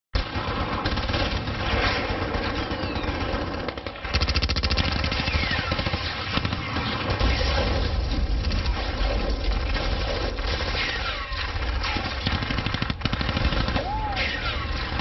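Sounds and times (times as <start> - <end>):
rapid machine-gun fire: 0.2 - 15.0.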